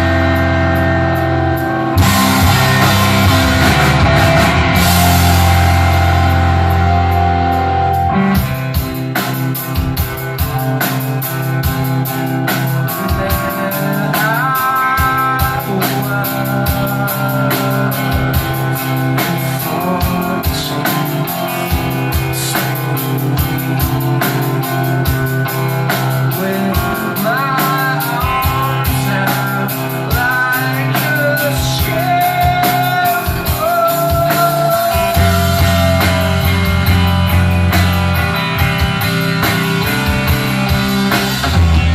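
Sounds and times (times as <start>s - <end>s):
drum kit beat: 0.0s - 41.9s
electric guitars and bass: 0.0s - 41.9s
person singing: 12.5s - 37.5s.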